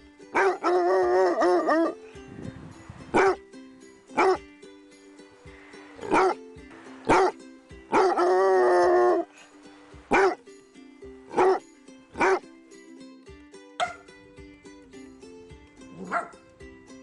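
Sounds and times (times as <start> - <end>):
background music: 0.0 - 17.0
dog barking: 0.4 - 0.7, 3.1 - 3.4, 4.2 - 4.4, 6.1 - 6.4, 7.1 - 8.2, 10.1 - 10.4, 11.3 - 11.6, 12.2 - 12.4, 13.8 - 14.1, 16.0 - 16.4
dog wavering cry: 7.9 - 9.3.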